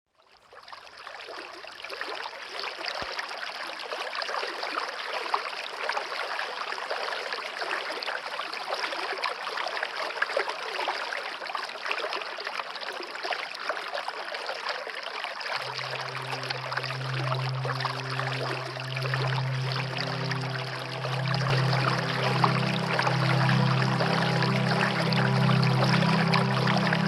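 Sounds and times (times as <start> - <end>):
rain patter: 15.6 - 27.0.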